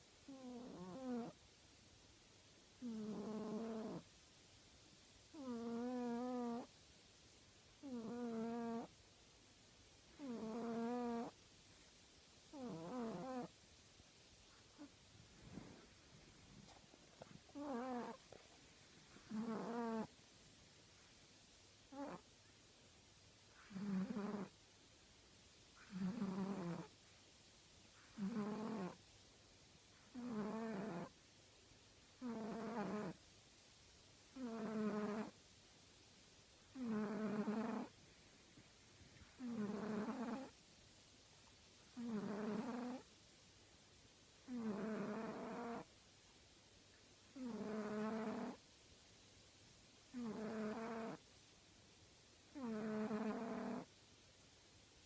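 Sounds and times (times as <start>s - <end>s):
pet snoring: 0.2s - 1.4s, 2.8s - 4.1s, 5.3s - 6.7s, 7.8s - 8.9s, 10.1s - 11.4s, 12.5s - 13.5s, 16.6s - 18.4s, 19.1s - 20.1s, 21.9s - 22.2s, 23.5s - 24.5s, 25.8s - 26.9s, 28.0s - 29.0s, 30.0s - 31.1s, 32.2s - 33.2s, 34.3s - 35.4s, 36.7s - 38.0s, 39.2s - 40.6s, 41.9s - 43.1s, 44.4s - 45.9s, 47.4s - 48.6s, 50.1s - 51.2s, 52.5s - 53.9s.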